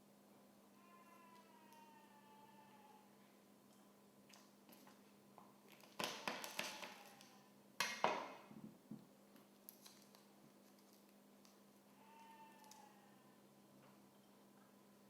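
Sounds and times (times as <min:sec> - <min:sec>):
garlic being crushed with knocks: 0:05.8 - 0:07.0.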